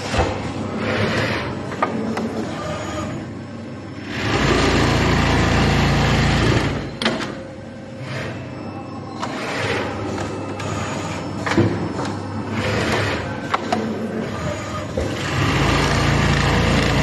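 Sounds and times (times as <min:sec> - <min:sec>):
sewing machine stitching: 0:14.5 - 0:17.0.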